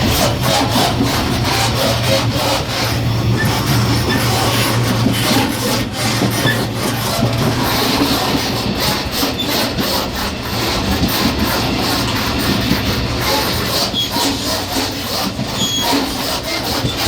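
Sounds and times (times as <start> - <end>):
rattles and knocks of car connection: 0.0 - 13.4
train wheels rumbling on rails: 0.0 - 17.0.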